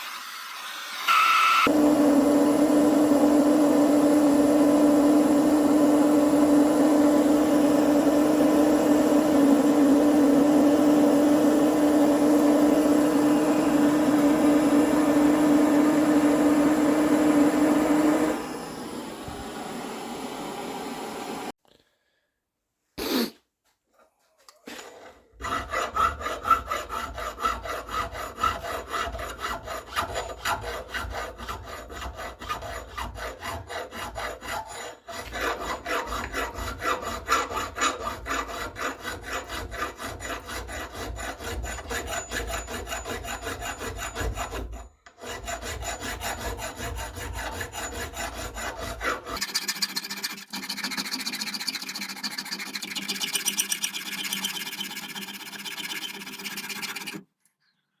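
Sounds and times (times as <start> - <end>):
hand tool rasping metal: 24.8 - 57.2.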